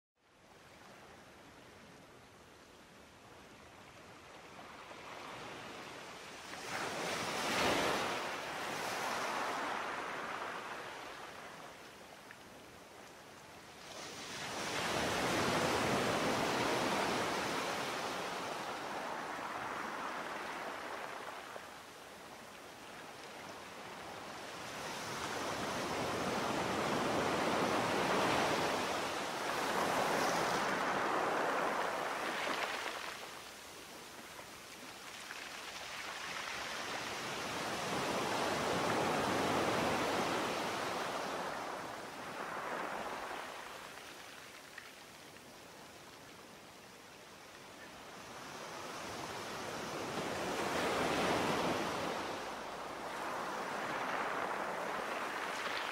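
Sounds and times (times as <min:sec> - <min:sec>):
sea waves surging: 0:23.6 - 0:33.8, 0:35.1 - 0:44.4, 0:49.1 - 0:55.9.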